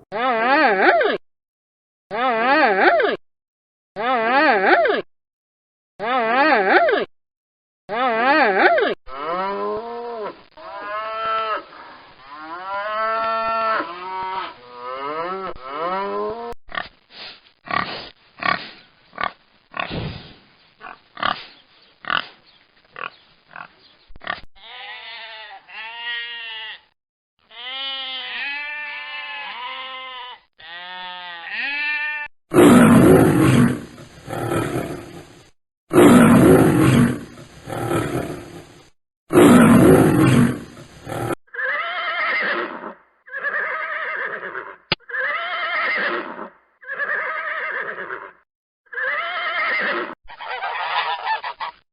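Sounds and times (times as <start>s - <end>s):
animal grunts: 32.5s - 41.4s
animal roars: 32.5s - 41.4s
pitched animal calls: 48.9s - 51.8s.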